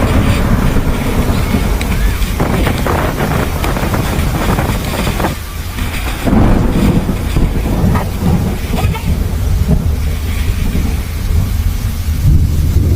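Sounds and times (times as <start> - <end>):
low thunder rumble: 0.0 - 12.9
rain: 0.0 - 12.9
wind gusts: 0.0 - 12.9.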